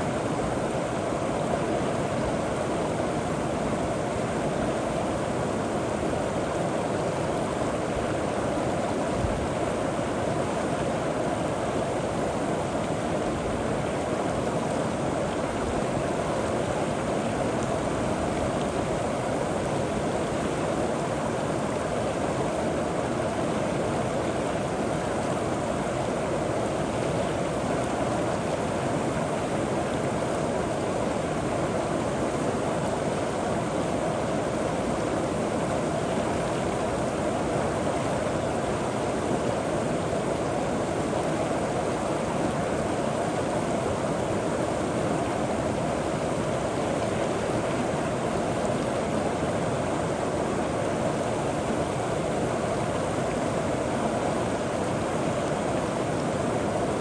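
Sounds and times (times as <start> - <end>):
river water flowing over rocks: 0.0 - 57.0.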